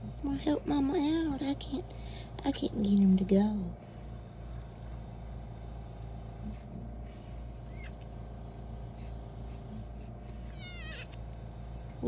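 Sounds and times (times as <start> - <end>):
steady low hum: 0.0 - 12.0
puppy squeak: 10.5 - 11.1.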